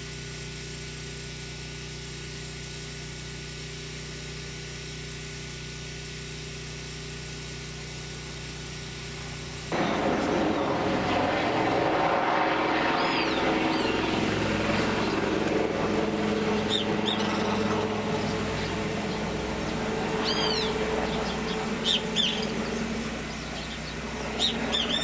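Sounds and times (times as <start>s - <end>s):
engine idling: 7.4s - 25.0s
birds chirping: 9.8s - 25.0s.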